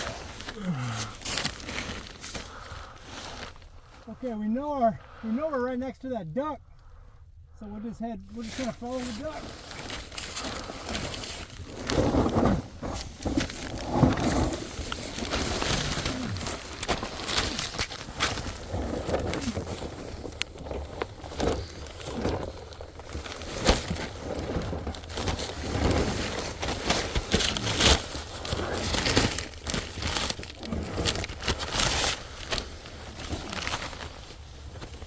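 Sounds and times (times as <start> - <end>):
scuffing and rustling of crawling: 0.0 - 4.1, 8.3 - 35.0.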